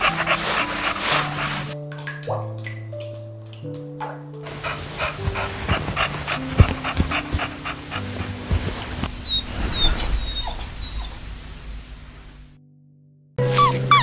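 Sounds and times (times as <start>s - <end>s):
dog panting: 0.0s - 1.8s, 4.5s - 11.0s, 13.4s - 14.0s
soft background music: 0.0s - 10.0s, 12.6s - 14.0s
dog whining: 4.5s - 11.3s, 13.4s - 14.0s.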